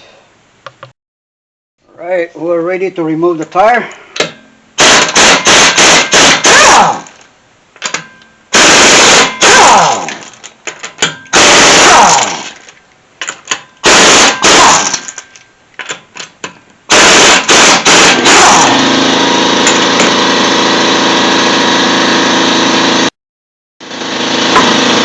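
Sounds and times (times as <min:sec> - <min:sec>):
impact wrench hammering: 0:04.2 - 0:07.2, 0:10.8 - 0:12.5, 0:13.2 - 0:15.2, 0:19.6 - 0:20.3, 0:24.5 - 0:24.9.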